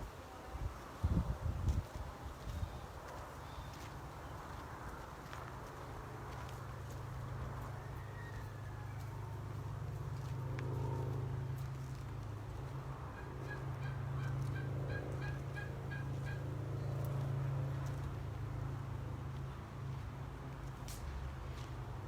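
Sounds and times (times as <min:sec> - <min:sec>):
fowl rapid repeated calls: 0:13.2 - 0:16.4.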